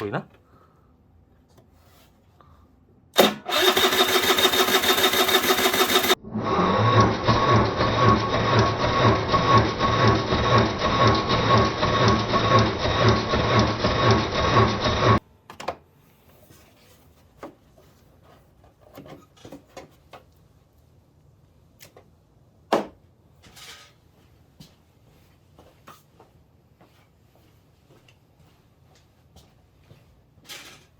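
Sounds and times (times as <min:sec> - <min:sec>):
electric starter cranking engine: 0:03.2 - 0:15.2.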